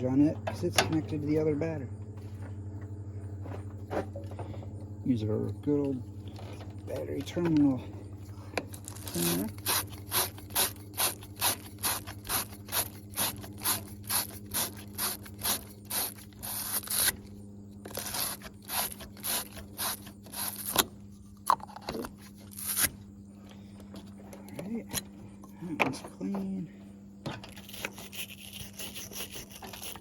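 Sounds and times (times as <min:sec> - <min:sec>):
wire brush scraping battery post: 0:08.6 - 0:23.1, 0:27.3 - 0:30.0.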